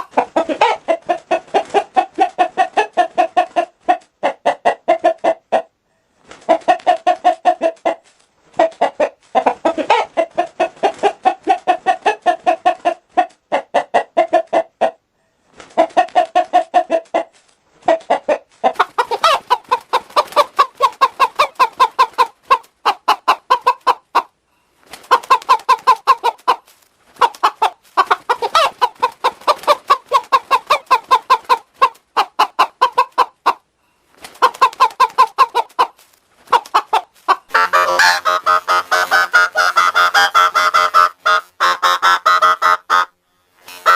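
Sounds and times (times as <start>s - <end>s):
hen clucking with voice effect: 36.6s - 43.1s.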